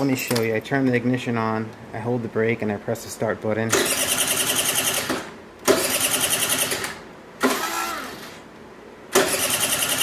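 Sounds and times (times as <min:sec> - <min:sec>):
scooter electric starter cranking: 0:03.8 - 0:08.4, 0:09.2 - 0:10.0.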